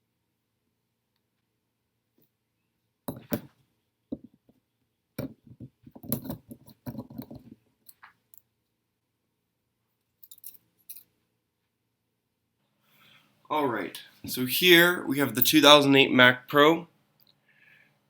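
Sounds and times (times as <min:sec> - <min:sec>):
objects clicking and knocking: 0:03.1 - 0:04.6, 0:05.2 - 0:08.5.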